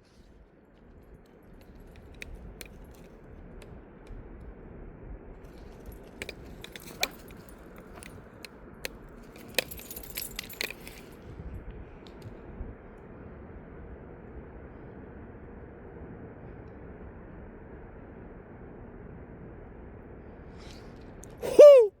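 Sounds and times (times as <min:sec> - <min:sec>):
low background rumble: 0:00.0 - 0:22.0
small metal pieces jingling: 0:06.4 - 0:08.0, 0:09.4 - 0:11.1.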